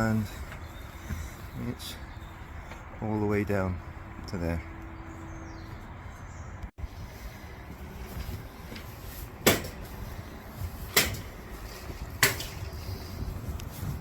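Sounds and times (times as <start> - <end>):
steady low rumble: 3.7 - 14.0
sharp knocks: 9.4 - 9.9, 10.9 - 11.3.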